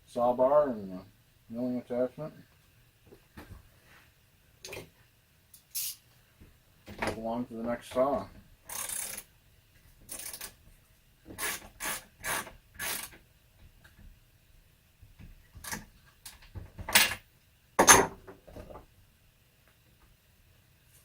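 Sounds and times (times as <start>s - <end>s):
chainsaw clicking and scraping: 8.7s - 9.2s, 10.1s - 10.6s.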